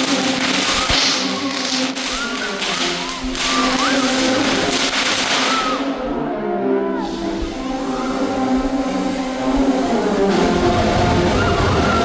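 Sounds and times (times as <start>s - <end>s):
fireworks hissing: 0.0s - 6.0s, 7.0s - 12.0s
band music: 6.9s - 12.0s.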